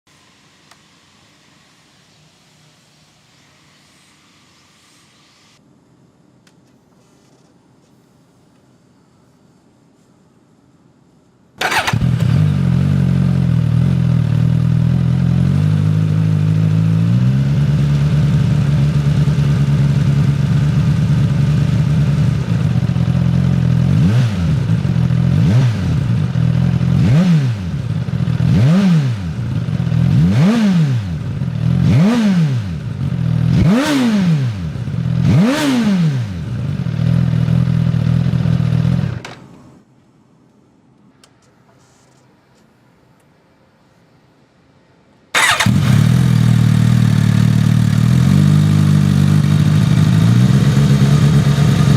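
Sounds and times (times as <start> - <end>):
motorcycle engine starting and revving: 11.6 - 39.6, 45.4 - 51.9.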